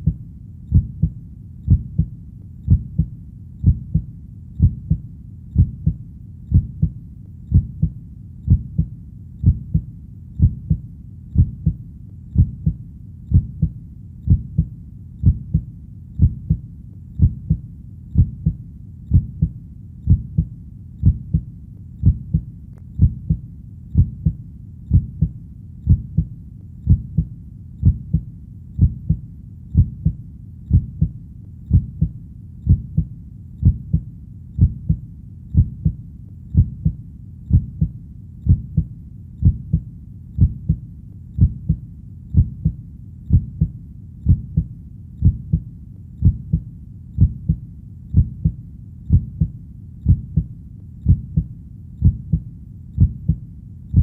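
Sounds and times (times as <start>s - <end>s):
heartbeat double thump: 0.0s - 2.1s, 2.7s - 5.0s, 5.6s - 10.8s, 12.4s - 16.6s, 17.2s - 17.6s, 18.2s - 23.4s, 24.0s - 26.3s, 26.9s - 29.2s, 29.8s - 34.0s, 34.6s - 35.0s, 35.6s - 36.0s, 36.6s - 37.9s, 38.5s - 39.8s, 40.4s - 40.8s, 41.4s - 41.8s, 42.4s - 43.7s, 44.3s - 45.6s, 46.2s - 46.6s, 47.2s - 52.4s, 53.0s - 54.0s.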